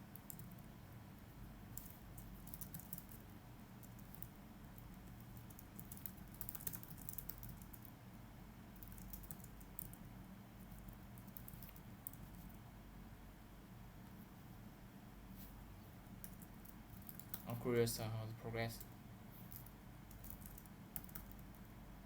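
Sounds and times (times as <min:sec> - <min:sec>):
low steady hum: 0:00.0 - 0:22.0
computer keyboard typing: 0:00.1 - 0:00.6, 0:01.7 - 0:08.0, 0:08.8 - 0:10.1, 0:10.7 - 0:12.4, 0:16.2 - 0:17.6, 0:19.5 - 0:21.7.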